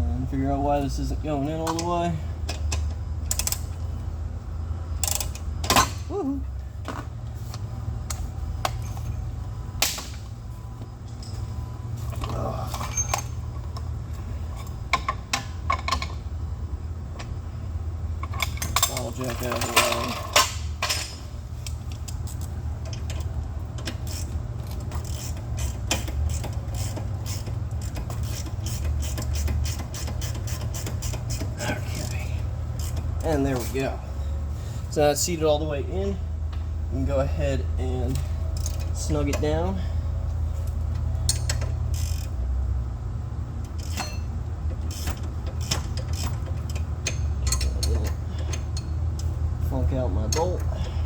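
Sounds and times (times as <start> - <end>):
steady low hum: 0.0 - 51.0
metallic clicks of hand tools: 44.9 - 49.3.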